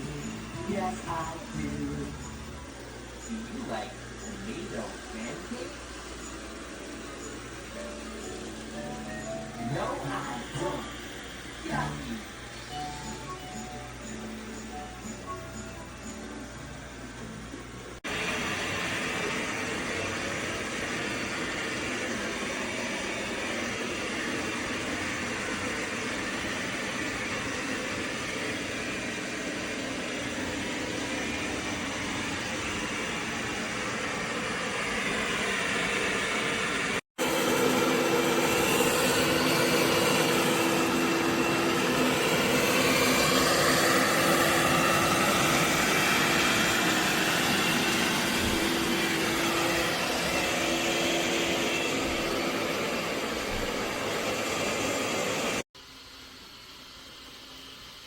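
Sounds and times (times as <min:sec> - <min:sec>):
robot vacuum whirring: 0:18.1 - 0:55.6.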